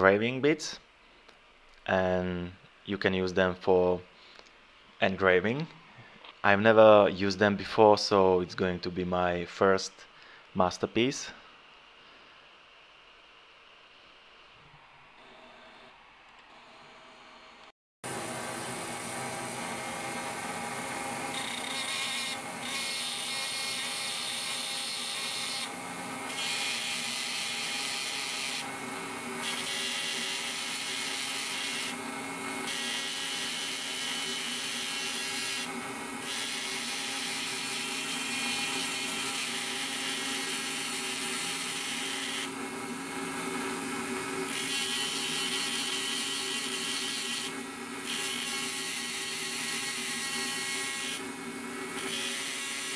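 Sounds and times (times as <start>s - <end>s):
rotary tool motor whine: 14.9s - 52.9s
engraving bit grinding: 19.0s - 52.9s.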